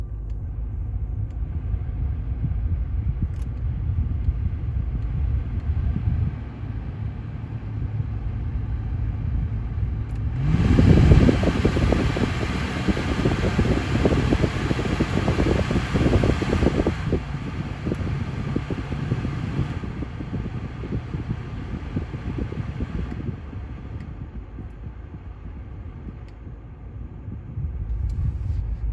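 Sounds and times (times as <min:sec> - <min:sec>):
air conditioning blower rumble: 0:00.0 - 0:28.9.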